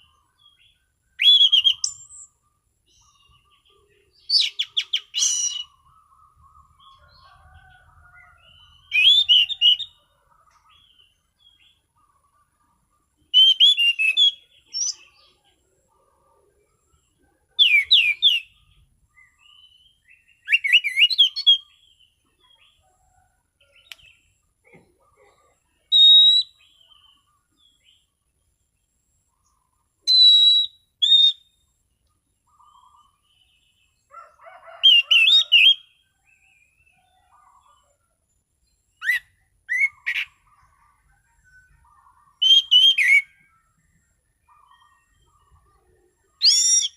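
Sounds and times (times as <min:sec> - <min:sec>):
soft quiet bird notes: 0:00.0 - 0:34.8, 0:36.0 - 0:46.9
thrush singing warbled whistles: 0:01.2 - 0:02.4, 0:04.2 - 0:06.0, 0:08.8 - 0:10.0, 0:13.3 - 0:15.1, 0:17.6 - 0:18.7, 0:20.4 - 0:21.8, 0:25.9 - 0:26.7, 0:30.0 - 0:31.6, 0:39.0 - 0:40.4, 0:42.4 - 0:43.6, 0:46.4 - 0:46.9.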